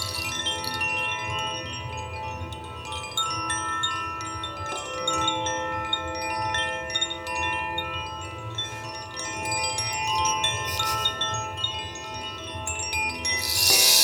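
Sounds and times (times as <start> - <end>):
metal chimes ringing: 0.0 - 0.8, 13.2 - 14.0.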